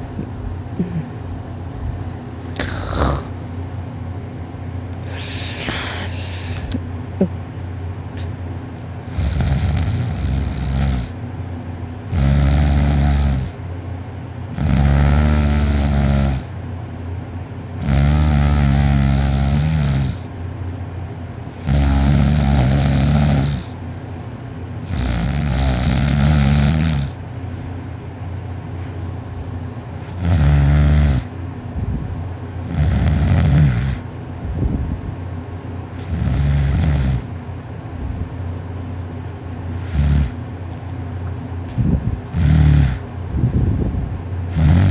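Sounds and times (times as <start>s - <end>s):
man snoring heavily: 2.6s - 3.4s, 9.1s - 11.2s, 12.1s - 13.6s, 14.5s - 16.5s, 17.8s - 20.3s, 21.6s - 23.8s, 24.8s - 27.2s, 30.0s - 31.3s, 32.6s - 34.1s, 36.0s - 37.3s, 39.8s - 40.4s, 42.3s - 43.1s, 44.5s - 44.9s.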